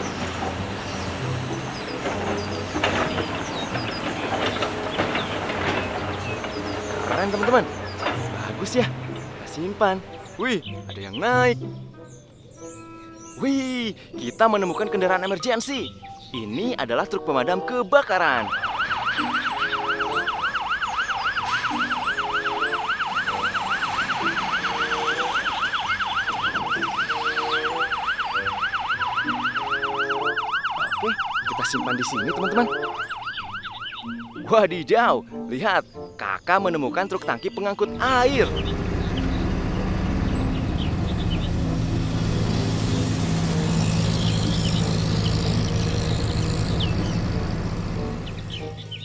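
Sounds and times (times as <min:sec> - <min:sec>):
vehicle engine humming: 0:00.0 - 0:17.5, 0:18.1 - 0:49.0
toy electronic siren wailing: 0:18.4 - 0:34.5.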